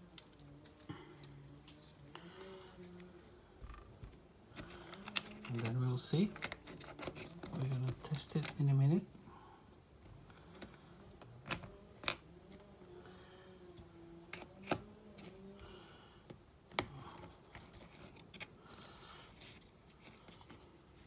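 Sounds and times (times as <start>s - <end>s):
small parts and tools clicking: 0.0s - 8.7s.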